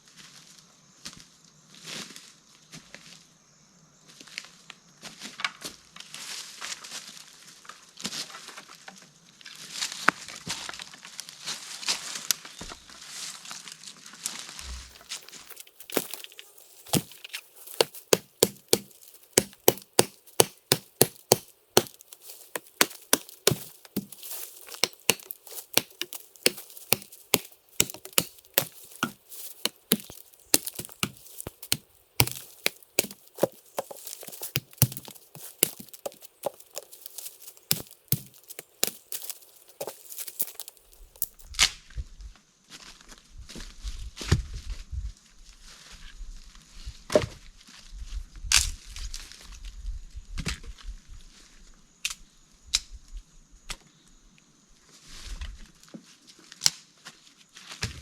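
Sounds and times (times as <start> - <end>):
chopping wood: 14.6 - 41.5
rustling and crackling: 14.6 - 41.5.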